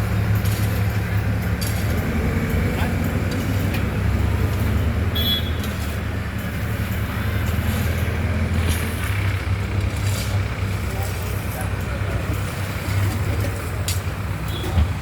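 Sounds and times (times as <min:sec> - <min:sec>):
heavy diesel engine droning: 0:00.0 - 0:15.0.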